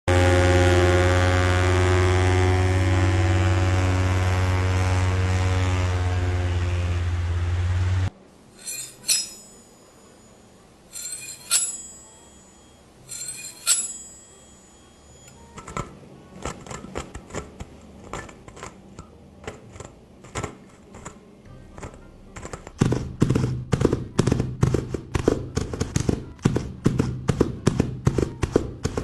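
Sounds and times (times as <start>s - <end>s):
loud droning hum: 0.1s - 16.4s
bright ringing clinks: 8.6s - 15.4s.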